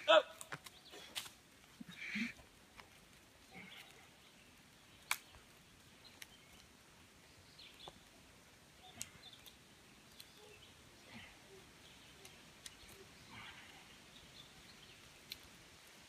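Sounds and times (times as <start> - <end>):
faint sharp clicks: 5.0 - 5.4, 6.1 - 6.7, 8.8 - 10.4, 12.0 - 13.1, 15.2 - 15.6.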